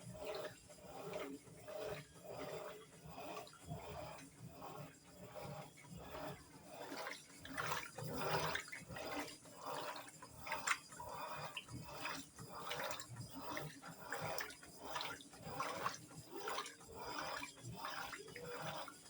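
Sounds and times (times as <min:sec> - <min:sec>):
washing machine sloshing clothes: 0:00.0 - 0:19.0.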